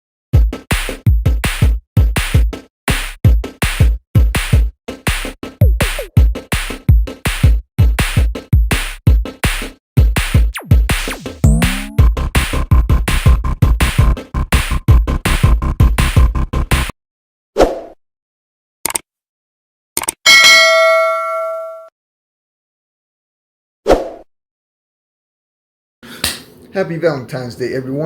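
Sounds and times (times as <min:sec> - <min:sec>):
drum machine beat: 0:00.4 - 0:16.4
falling synth sweeps: 0:11.5 - 0:12.0.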